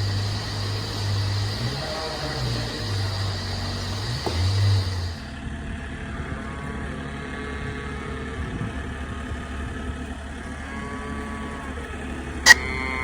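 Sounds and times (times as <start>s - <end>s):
vehicle engine running: 0.0s - 13.0s
faint calves mooing: 10.4s - 13.0s.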